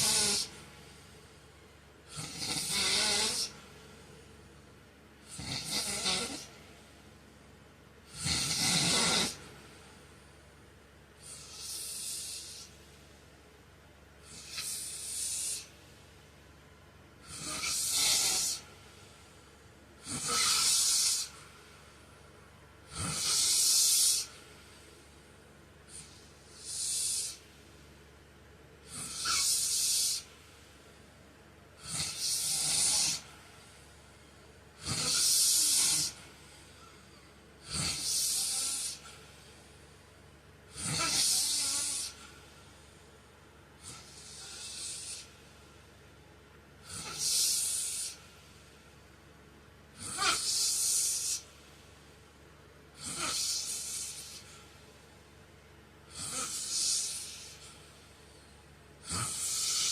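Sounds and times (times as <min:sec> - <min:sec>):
man snoring: 0:00.0 - 0:00.7, 0:02.1 - 0:03.6, 0:05.2 - 0:06.6, 0:08.1 - 0:09.7, 0:11.2 - 0:12.8, 0:14.2 - 0:15.7, 0:17.2 - 0:18.7, 0:20.0 - 0:21.5, 0:22.9 - 0:24.4, 0:25.9 - 0:27.4, 0:28.8 - 0:30.3, 0:31.8 - 0:33.4, 0:34.8 - 0:36.4, 0:37.6 - 0:39.2, 0:40.7 - 0:42.4, 0:43.8 - 0:45.3, 0:46.8 - 0:48.2, 0:50.0 - 0:51.4, 0:53.0 - 0:54.5, 0:56.1 - 0:57.8, 0:59.0 - 0:59.9.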